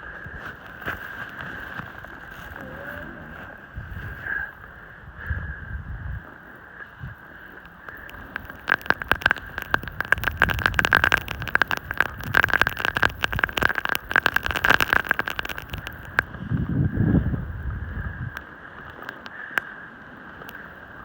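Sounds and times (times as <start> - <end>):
rapid crackle of clicks: 0.0 - 3.0, 7.2 - 16.4, 18.3 - 21.0
snowboard scraping over snow: 0.3 - 4.5.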